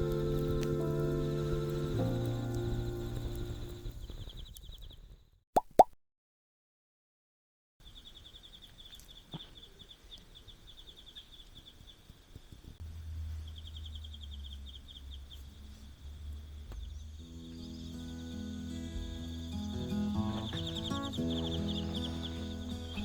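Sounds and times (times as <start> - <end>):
music: 0.0 - 4.0, 17.2 - 23.0
insects chirping: 0.0 - 5.0, 16.3 - 23.0.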